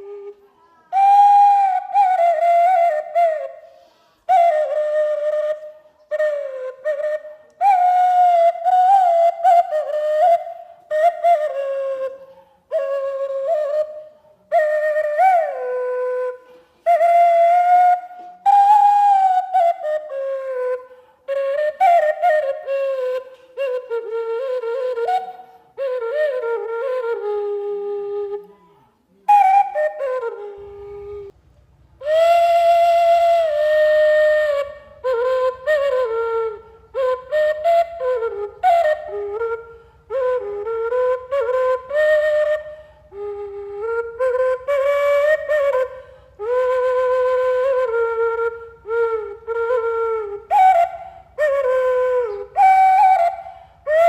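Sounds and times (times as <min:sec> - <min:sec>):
slow flute melody: 0:00.0 - 0:31.4, 0:32.0 - 0:54.0.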